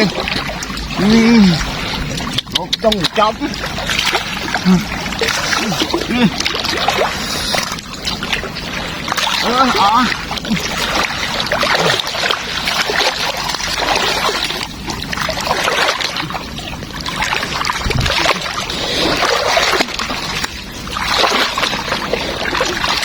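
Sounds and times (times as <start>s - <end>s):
water splashing and sloshing: 0.0s - 23.0s.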